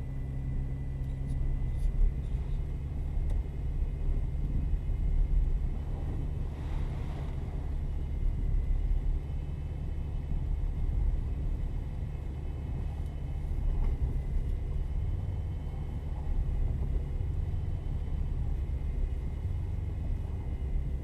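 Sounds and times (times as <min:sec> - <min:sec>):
vehicle engine and road rumble: 0:00.0 - 0:21.0.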